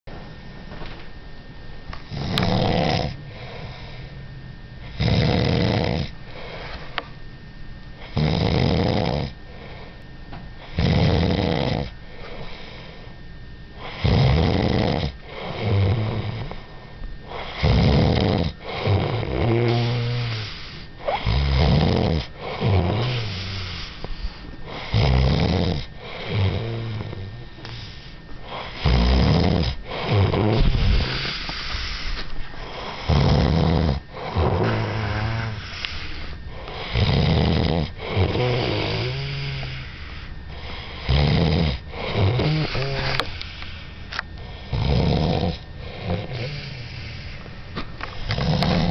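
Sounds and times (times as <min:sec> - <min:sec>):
loud snoring: 0:02.1 - 0:03.8, 0:04.9 - 0:06.2, 0:08.0 - 0:09.4, 0:10.7 - 0:11.9, 0:13.8 - 0:16.6, 0:17.3 - 0:24.1, 0:24.7 - 0:32.0, 0:32.7 - 0:47.4, 0:48.2 - 0:48.9
quiet breaths: 0:03.2 - 0:05.0, 0:06.2 - 0:07.1, 0:09.5 - 0:10.8, 0:12.0 - 0:14.0, 0:18.6 - 0:21.2, 0:22.2 - 0:25.1, 0:25.9 - 0:29.0, 0:29.8 - 0:33.2, 0:34.1 - 0:37.2, 0:37.9 - 0:44.8, 0:45.8 - 0:48.9.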